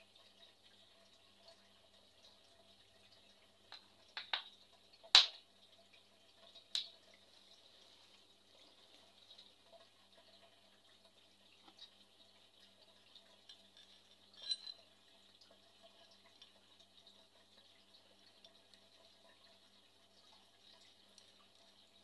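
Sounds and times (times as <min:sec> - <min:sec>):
faint steady hiss: 0:00.0 - 0:22.0.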